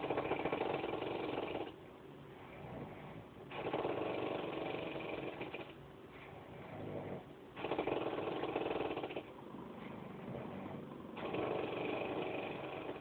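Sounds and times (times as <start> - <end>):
quiet breathing: 2.2 - 3.5, 4.3 - 7.5, 8.1 - 13.0
woman snoring: 10.2 - 13.0.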